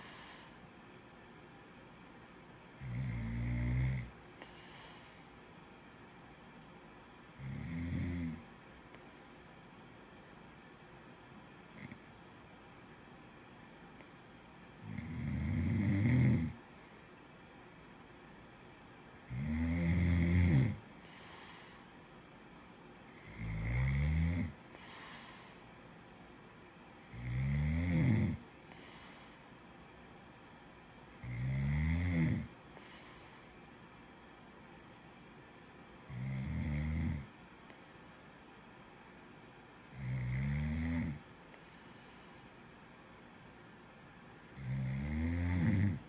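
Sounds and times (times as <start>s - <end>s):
quiet breathing: 0.0s - 1.3s, 2.6s - 6.2s, 19.1s - 26.2s, 27.9s - 30.2s, 32.1s - 34.6s, 39.7s - 43.3s
person snoring: 2.8s - 4.2s, 7.4s - 8.4s, 11.8s - 12.1s, 14.8s - 16.6s, 19.2s - 20.8s, 23.1s - 25.1s, 27.1s - 28.4s, 31.2s - 32.6s, 36.1s - 37.3s, 39.9s - 41.2s, 44.5s - 46.0s.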